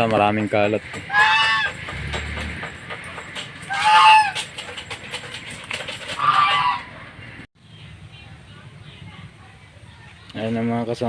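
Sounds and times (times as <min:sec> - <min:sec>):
domestic fowl calling: 0:01.1 - 0:01.7, 0:03.7 - 0:04.4, 0:06.2 - 0:07.0.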